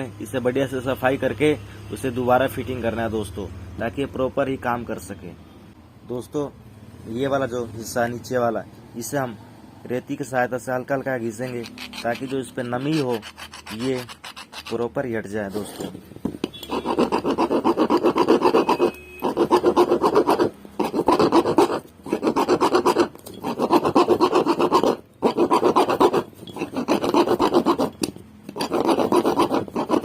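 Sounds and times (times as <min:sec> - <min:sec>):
hand file rubbing on metal: 0:11.3 - 0:16.0, 0:16.6 - 0:30.0.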